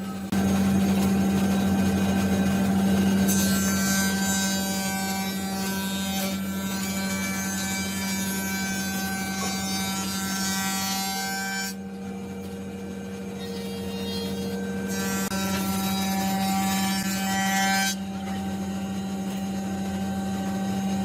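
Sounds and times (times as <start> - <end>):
electric power tool humming: 0.0 - 10.4, 11.7 - 17.1.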